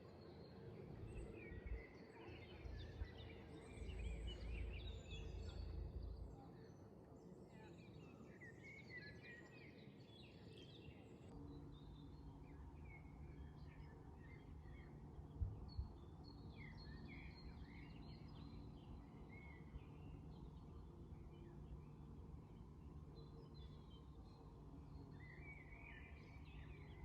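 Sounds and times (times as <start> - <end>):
songbirds chirping: 0.2 - 6.8, 7.7 - 27.0
low background rumble: 2.6 - 6.4.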